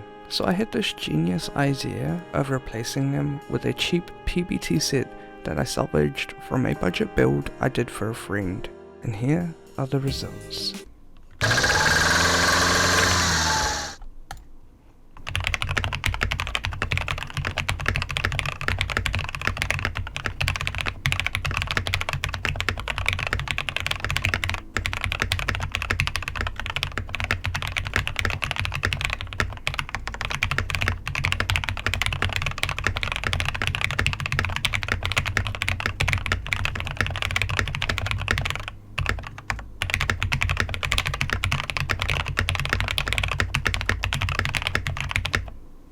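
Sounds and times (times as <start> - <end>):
mechanical keyboard typing: 11.4 - 14.4, 15.2 - 45.6.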